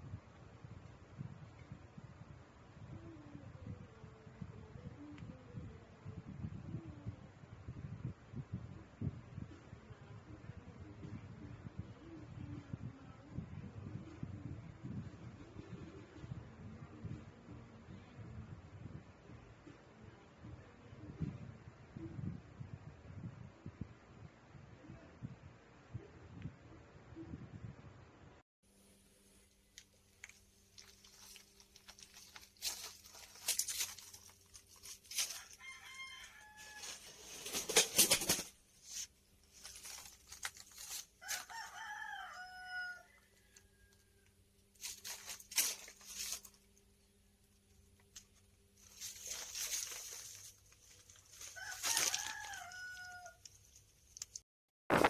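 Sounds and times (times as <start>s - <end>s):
rooster crowing: 35.2s - 37.1s, 41.2s - 44.3s, 51.4s - 53.5s.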